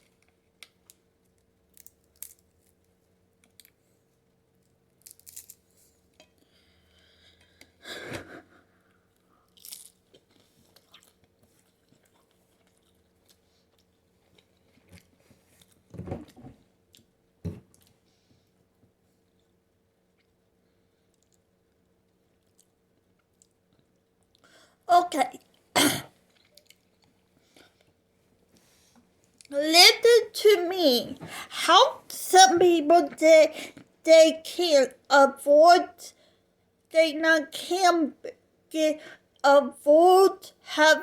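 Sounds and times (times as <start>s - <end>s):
person chewing crunchy food: 9.5s - 15.8s.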